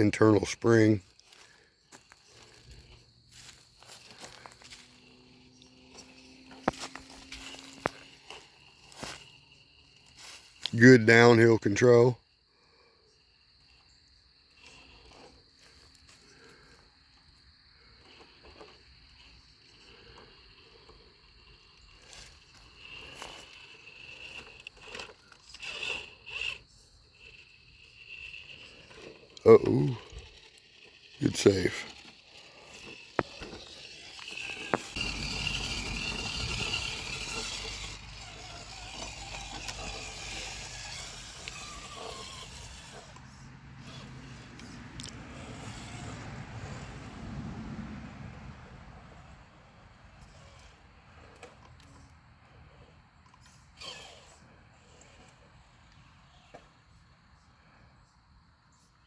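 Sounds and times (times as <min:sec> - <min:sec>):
electric motor and gears whining: 0:00.0 - 0:12.1, 0:13.6 - 0:47.4, 0:50.2 - 0:57.0
tyres crunching over rock: 0:28.4 - 0:43.2.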